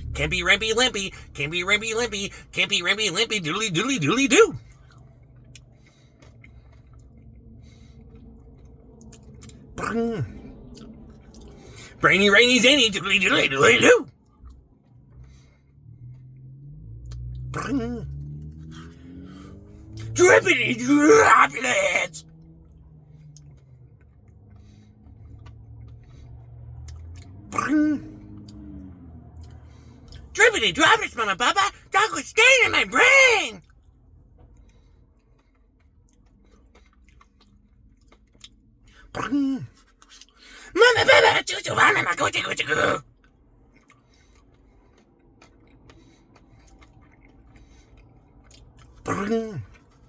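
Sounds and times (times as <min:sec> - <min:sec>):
person's voice: 0:00.0 - 0:04.6, 0:11.8 - 0:14.1, 0:20.0 - 0:22.2, 0:30.3 - 0:33.6, 0:40.6 - 0:43.0
low steady hum: 0:00.0 - 0:18.2
mouth clicks and chewing: 0:04.6 - 0:12.0, 0:22.3 - 0:28.8, 0:33.6 - 0:40.6, 0:43.0 - 0:50.0.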